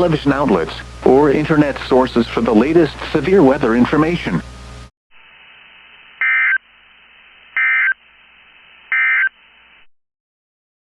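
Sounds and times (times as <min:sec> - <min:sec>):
digital data tone bursts: 0:06.2 - 0:06.6, 0:07.6 - 0:08.0, 0:08.9 - 0:09.4.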